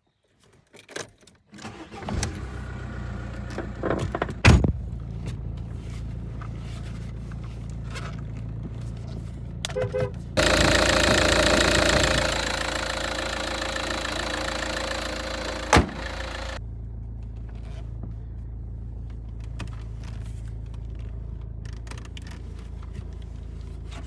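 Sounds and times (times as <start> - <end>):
car engine idling: 9.6 - 17.3
rough steering noise: 9.8 - 16.6.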